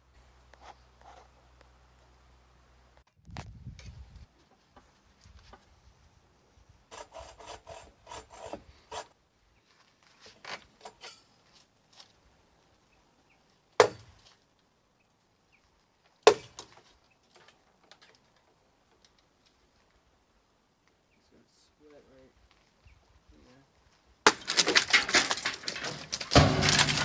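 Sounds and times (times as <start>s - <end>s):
hand saw cutting wood: 6.9s - 9.1s, 13.8s - 14.1s, 24.3s - 27.0s
loud sharp cracks: 24.3s - 27.0s.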